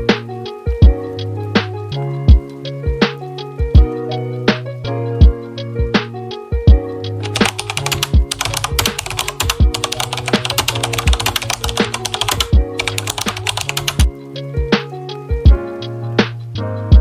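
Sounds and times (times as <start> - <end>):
hip-hop beat music: 6.7 - 14.8
rapid clicking hi-hats: 7.2 - 14.2.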